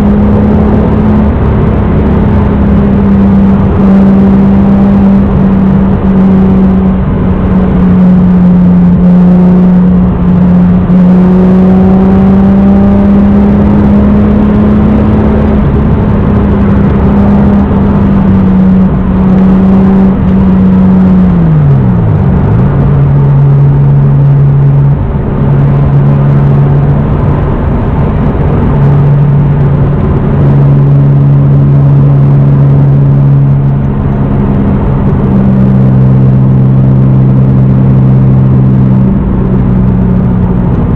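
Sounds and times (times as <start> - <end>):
car engine cruising: 0.0 - 40.9.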